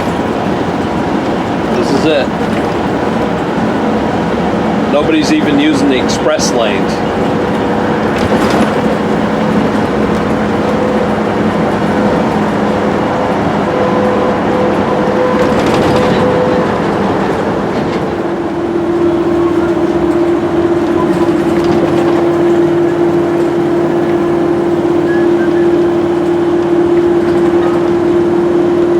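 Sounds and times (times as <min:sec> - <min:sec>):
droning hum: 0:00.0 - 0:28.9
motorhome road and engine rumble: 0:00.0 - 0:28.9.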